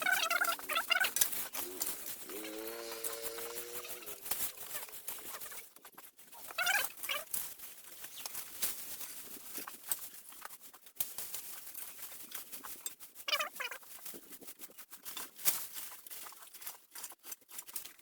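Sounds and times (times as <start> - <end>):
wavering animal call: 0.0 - 5.6
scraping and rustling clicks: 0.0 - 18.0.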